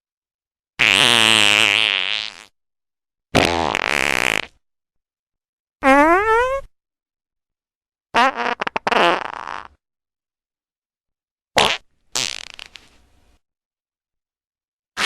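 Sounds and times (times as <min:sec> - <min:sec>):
fart sound effects: 0:00.8 - 0:02.5, 0:03.4 - 0:04.6, 0:05.8 - 0:06.7, 0:08.2 - 0:09.8, 0:11.6 - 0:12.9.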